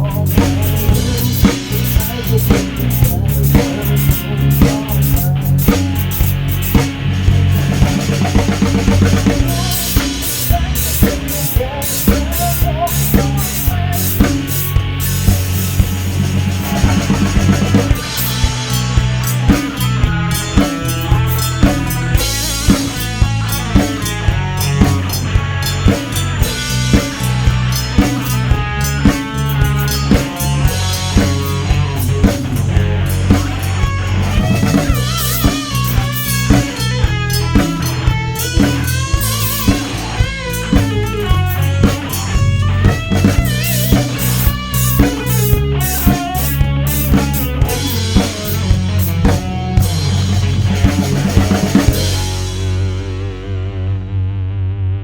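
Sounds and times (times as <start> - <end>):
drum kit beat: 0.0 - 53.6
heavy bass line: 0.0 - 55.0
melody line with bending notes: 0.0 - 55.0
rock band instrumental: 0.0 - 55.0.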